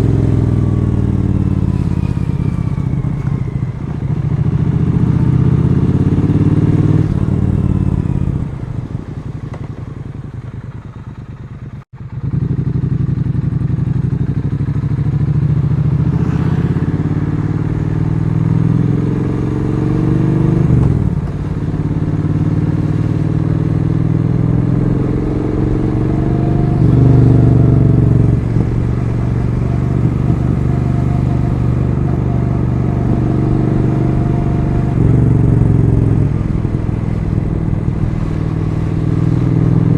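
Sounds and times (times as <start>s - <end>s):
motorcycle engine shifting gears: 0.0s - 39.9s.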